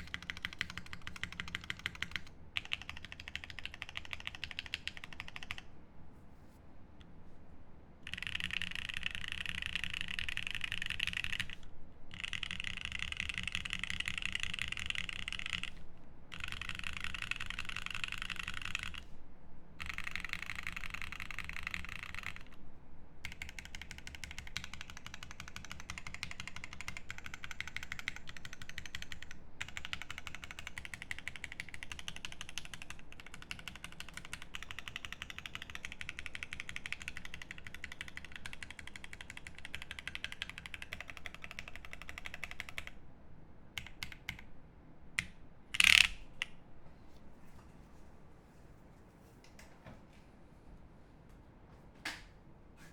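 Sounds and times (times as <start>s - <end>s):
fast mechanical keyboard typing: 0.0s - 5.7s, 8.0s - 19.1s, 19.8s - 22.6s, 23.2s - 43.0s, 43.8s - 44.4s, 45.2s - 46.2s.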